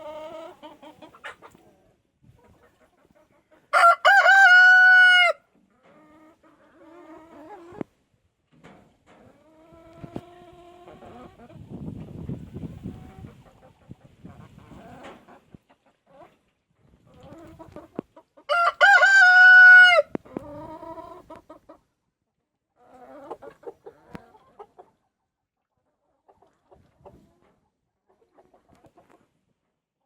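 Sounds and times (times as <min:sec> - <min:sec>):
hens clucking: 0:00.0 - 0:07.8, 0:17.1 - 0:21.8, 0:22.9 - 0:25.0
rooster crowing: 0:03.8 - 0:05.4, 0:18.5 - 0:20.1.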